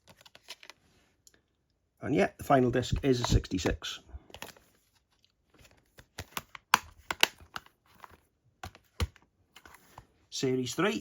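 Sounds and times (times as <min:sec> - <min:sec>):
plastic cases clicking and tapping: 0:05.7 - 0:09.8.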